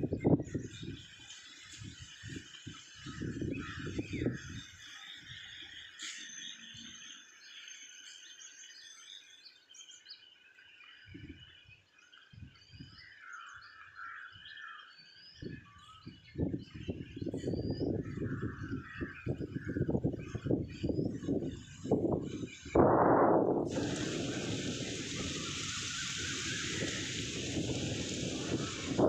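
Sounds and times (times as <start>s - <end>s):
wind buffeting microphone: 0.0s - 5.6s, 11.1s - 11.6s, 15.4s - 29.0s
birds chirping and calling: 0.0s - 29.0s.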